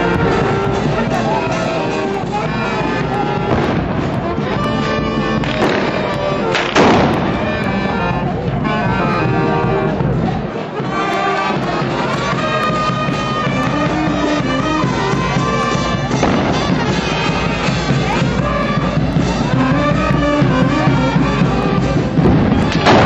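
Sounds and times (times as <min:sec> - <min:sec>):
brass band playing: 0:00.0 - 0:23.0
steady drum beat: 0:00.0 - 0:23.0
musket shot bang: 0:05.4 - 0:07.5, 0:22.6 - 0:23.0.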